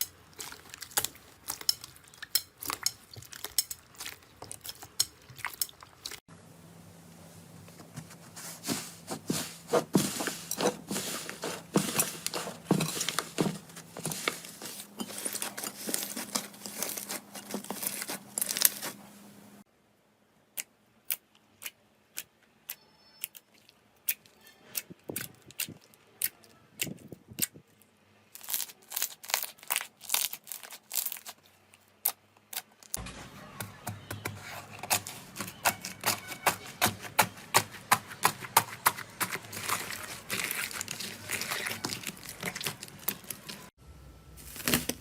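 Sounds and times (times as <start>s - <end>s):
slime crackling and popping: 0.0s - 6.1s, 28.3s - 31.4s, 38.8s - 43.7s, 44.4s - 45.0s.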